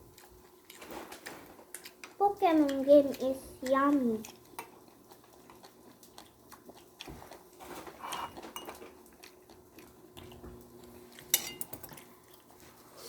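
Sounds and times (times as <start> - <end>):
cutlery clicking on dishes: 11.2 - 12.1
utensil clinking against dish: 11.3 - 12.1.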